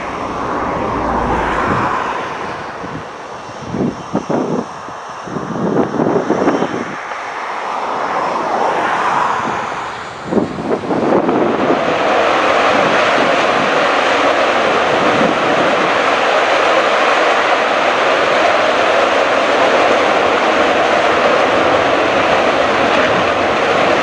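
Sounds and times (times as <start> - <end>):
jet engine roar: 0.0 - 24.0.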